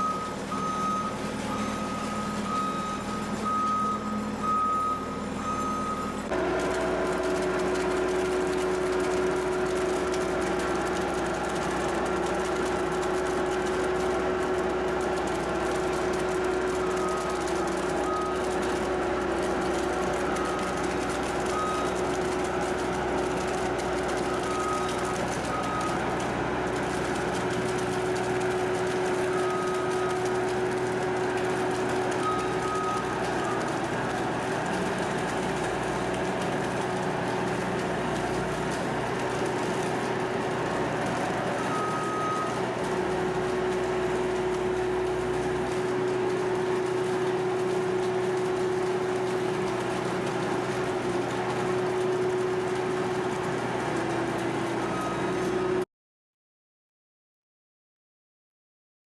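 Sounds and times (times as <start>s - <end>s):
reversing alarm beeping: 0.0s - 26.2s, 27.0s - 36.8s, 40.6s - 47.6s, 54.8s - 55.5s
skid steer engine running: 0.0s - 55.8s.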